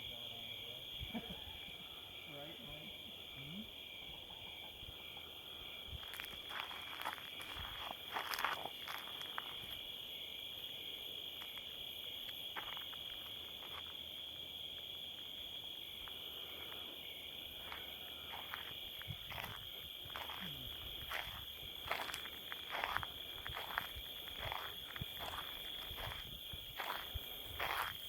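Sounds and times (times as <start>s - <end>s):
crickets chirping: 0.0s - 28.0s
footsteps: 6.0s - 9.8s, 17.6s - 28.0s.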